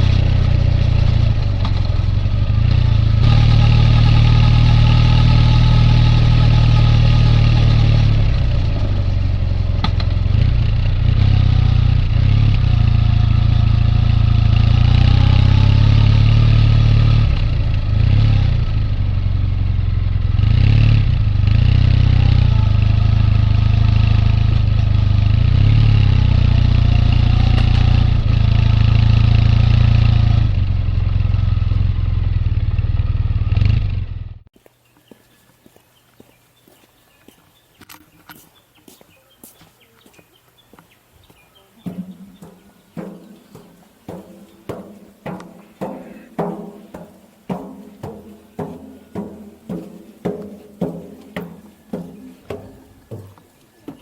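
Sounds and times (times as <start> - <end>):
motorcycle engine running: 0.0 - 34.5, 41.8 - 54.0.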